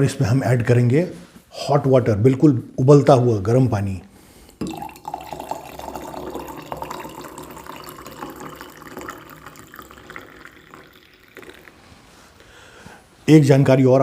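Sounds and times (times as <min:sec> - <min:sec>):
water poured into glass: 0:04.5 - 0:12.0.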